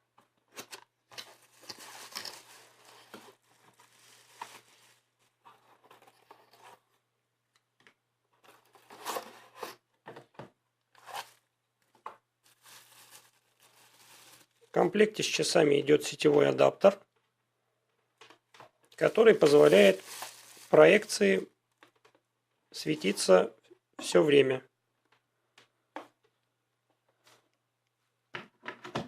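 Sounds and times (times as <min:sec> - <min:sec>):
packaging rustling and crinkling: 0:00.6 - 0:06.3, 0:12.4 - 0:14.8, 0:19.0 - 0:21.4.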